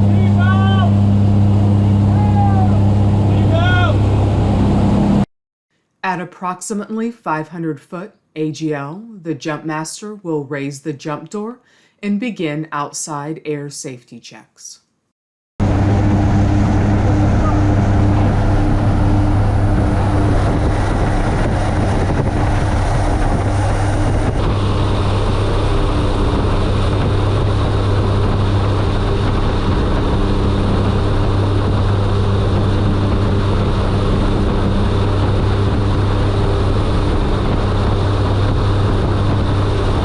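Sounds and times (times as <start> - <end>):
turboprop propeller drone: 0.0 - 5.3, 15.6 - 40.0.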